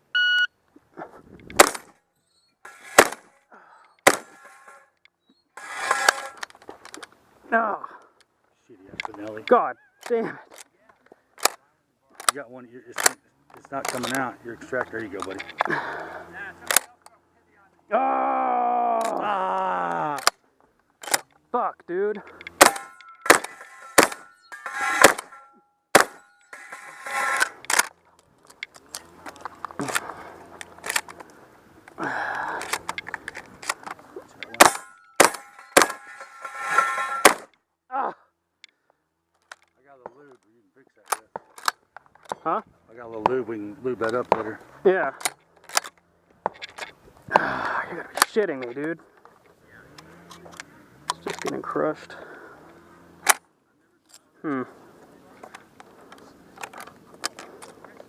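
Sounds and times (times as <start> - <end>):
shotgun shots: 1.6 - 1.9, 2.8 - 3.3, 4.0 - 4.5, 22.6 - 26.2, 34.6 - 37.5
metallic ring of steel targets: 4.0 - 4.9, 22.4 - 27.6, 34.5 - 37.5
gun handling clicks: 10.0 - 11.6, 12.2 - 12.4, 13.0 - 13.2, 13.8 - 14.2, 16.6 - 17.1, 20.2 - 21.4, 27.3 - 35.4, 41.0 - 42.4, 45.2 - 47.0, 48.1 - 49.4, 53.2 - 53.4, 55.5 - 58.0.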